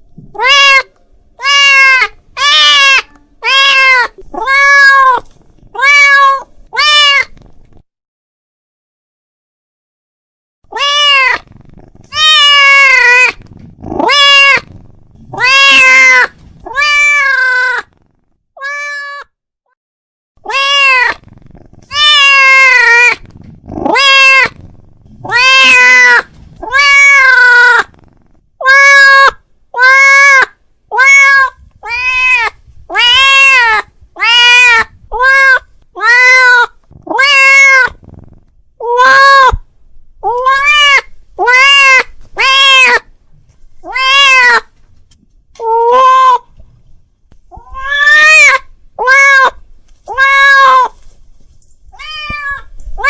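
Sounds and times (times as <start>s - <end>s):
cat meowing loudly: 0.3s - 7.4s, 10.7s - 11.5s, 12.1s - 14.7s, 15.3s - 17.9s, 18.6s - 19.4s, 20.4s - 21.2s, 21.9s - 24.6s, 25.2s - 27.9s, 28.6s - 38.0s, 38.8s - 43.1s, 43.8s - 44.7s, 45.6s - 46.5s, 47.5s - 51.0s, 51.9s - 53.0s.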